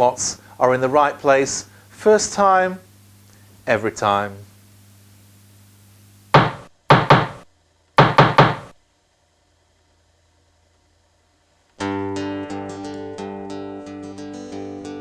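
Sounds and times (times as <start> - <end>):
sharp knocks: 6.4 - 7.4, 8.0 - 8.8
acoustic guitar music: 11.8 - 15.0.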